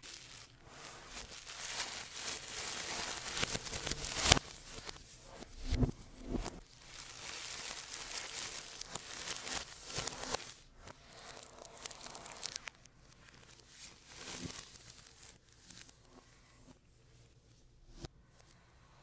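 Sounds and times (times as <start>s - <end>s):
packaging tearing and crinkling: 0.0s - 5.8s, 6.4s - 15.9s.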